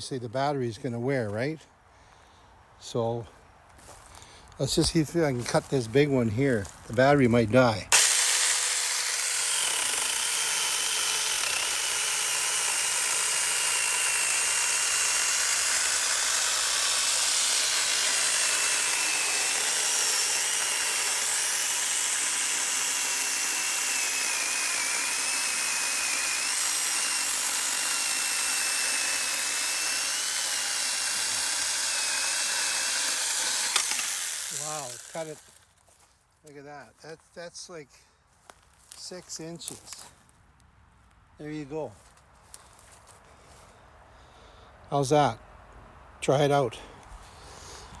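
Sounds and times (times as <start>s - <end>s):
electric motor whining: 7.9s - 35.6s
chain rasping through wood: 8.0s - 35.6s.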